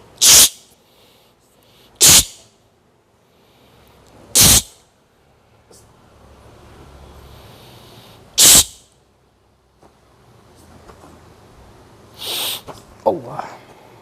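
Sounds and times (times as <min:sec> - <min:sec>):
person blowing sharp puffs: 0:00.2 - 0:02.5, 0:04.3 - 0:04.8, 0:07.3 - 0:08.9, 0:12.1 - 0:12.8
soft breathing: 0:00.8 - 0:02.0, 0:03.2 - 0:04.0, 0:07.1 - 0:08.4.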